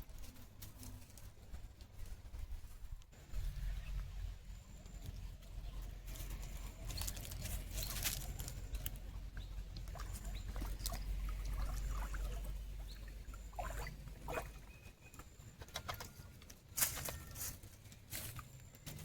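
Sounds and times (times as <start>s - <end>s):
steady low rumble: 1.4s - 14.7s
animal nibbling and rustling: 6.0s - 9.0s.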